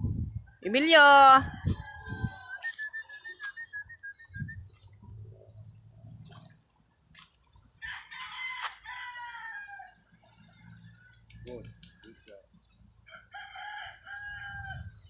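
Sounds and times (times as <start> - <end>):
rooster crowing: 1.3 - 3.1, 7.8 - 10.0, 13.1 - 15.0.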